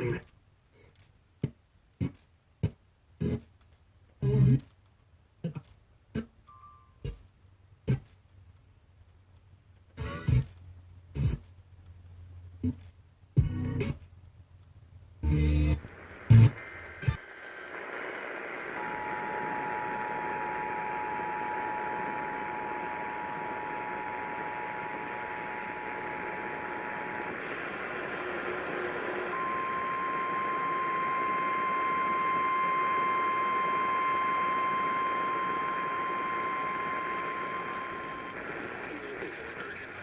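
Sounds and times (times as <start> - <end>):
radio hiss: 0.0 - 0.9, 15.2 - 40.0
steady warning alarm tone: 18.6 - 38.4.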